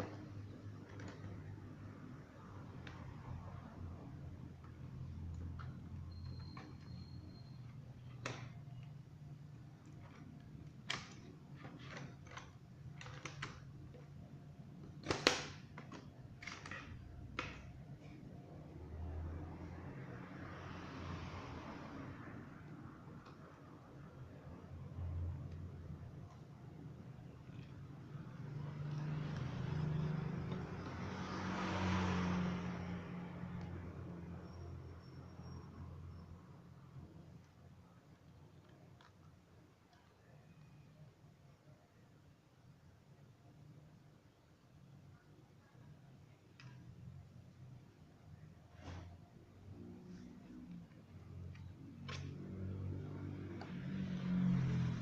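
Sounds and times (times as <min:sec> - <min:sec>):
motor vehicle passing by: 0:18.8 - 0:22.6, 0:28.0 - 0:34.4, 0:49.7 - 0:55.0.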